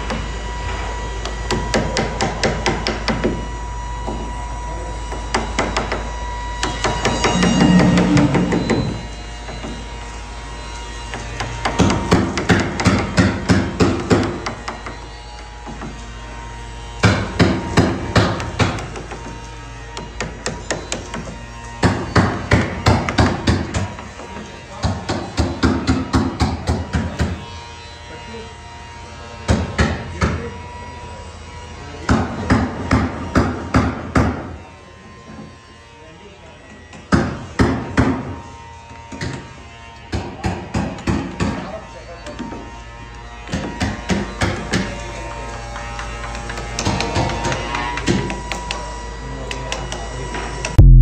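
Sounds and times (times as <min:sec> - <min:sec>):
hammer blows on wood: 0:06.6 - 0:09.8
steady hum: 0:06.7 - 0:09.9, 0:50.8 - 0:51.0
loud deep boom: 0:07.1 - 0:09.3, 0:50.8 - 0:51.0.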